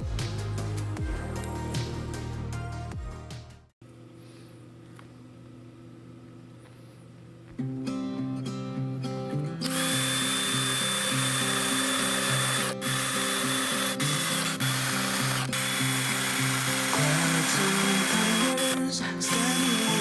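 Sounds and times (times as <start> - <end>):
background music: 0.0 - 3.7, 8.0 - 20.0
power tool whining: 9.6 - 20.0.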